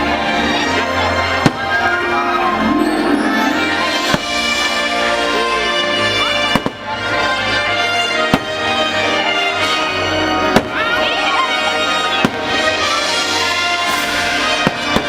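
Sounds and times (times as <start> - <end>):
loud music soundtrack: 1.8 - 5.0.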